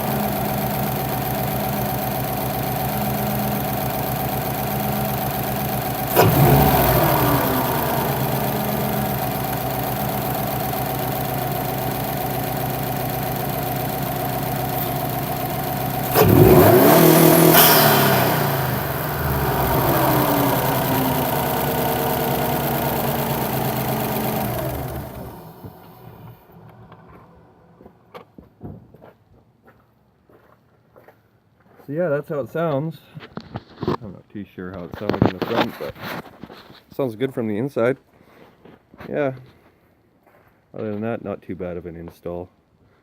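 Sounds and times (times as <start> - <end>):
car engine idling and revving: 0.0 - 28.0.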